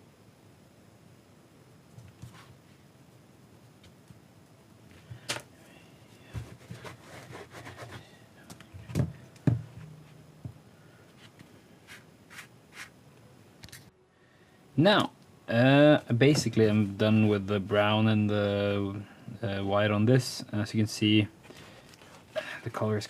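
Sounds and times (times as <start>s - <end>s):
cloth rubbing paint: 6.4s - 8.1s, 11.2s - 13.0s.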